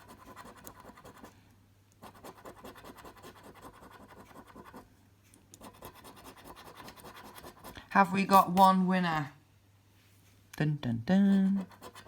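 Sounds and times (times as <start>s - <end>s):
scratch card being scratched: 0.0s - 1.3s, 2.0s - 4.8s, 5.6s - 7.8s, 11.4s - 12.0s.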